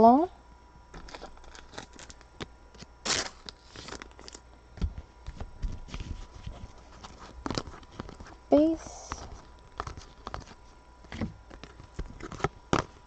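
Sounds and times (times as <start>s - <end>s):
trading cards clicking and rustling: 1.0s - 13.0s
cards brushing: 5.2s - 13.0s.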